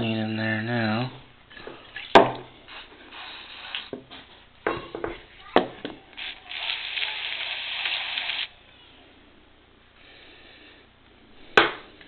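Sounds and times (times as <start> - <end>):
aerosol spray hissing: 2.7 - 4.0.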